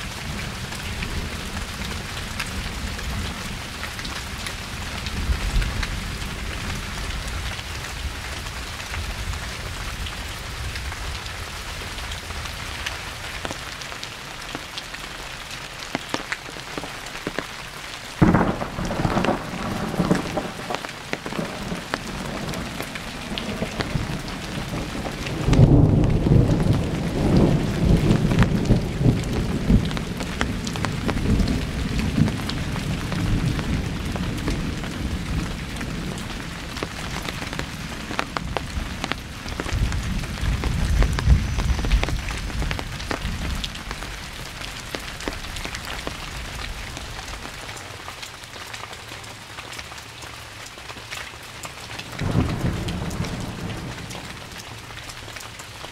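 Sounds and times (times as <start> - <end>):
steady rain falling: 0.0 - 55.9
sharp thunder crack: 18.2 - 36.2
rolling thunder rumble: 18.2 - 45.6, 52.1 - 54.6.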